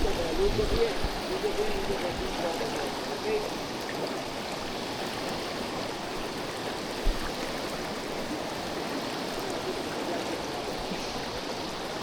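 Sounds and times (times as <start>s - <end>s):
river rushing: 0.0s - 12.0s
low thump: 7.0s - 7.3s.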